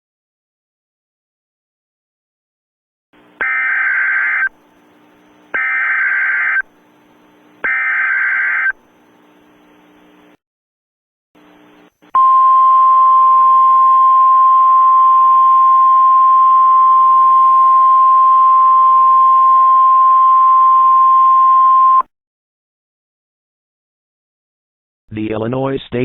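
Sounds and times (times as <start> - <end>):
loud steady alert tone: 5.6 - 6.7, 7.7 - 8.8.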